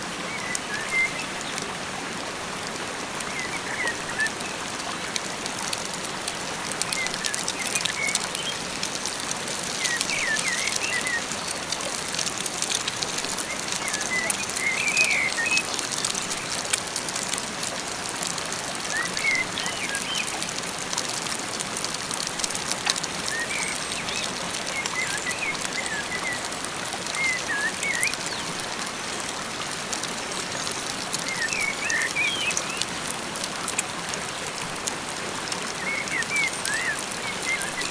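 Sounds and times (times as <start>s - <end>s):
small birds chirping: 0.3s - 1.7s, 3.2s - 6.0s, 6.7s - 17.3s, 18.7s - 20.6s, 22.8s - 34.8s, 35.4s - 37.9s.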